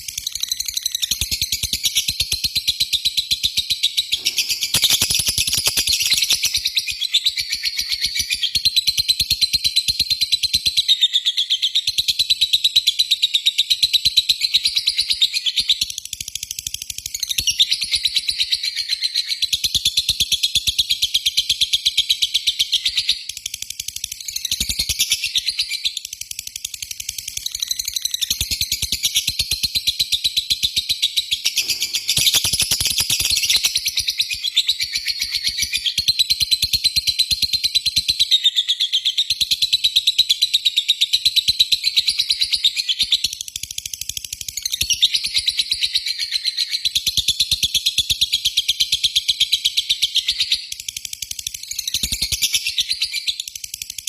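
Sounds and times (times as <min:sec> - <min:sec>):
lovebird chattering: 0:04.1 - 0:06.6, 0:31.5 - 0:33.8.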